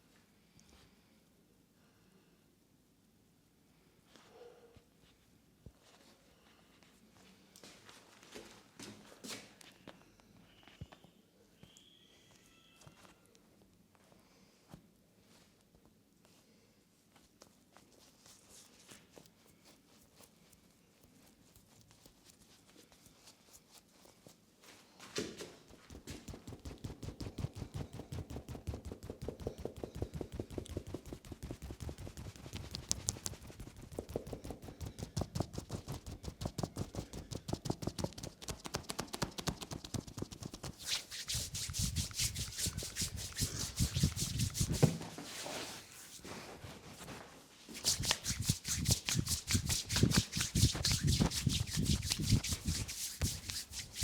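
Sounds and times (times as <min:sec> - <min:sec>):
hands slapping a body: 0:25.2 - 0:45.4, 0:47.8 - 0:54.0.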